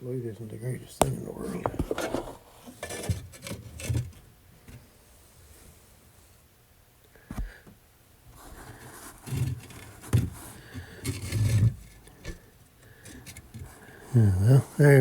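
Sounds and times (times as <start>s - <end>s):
dull thumps: 1.0s - 2.4s
equipment scraping and knocking: 1.0s - 2.4s.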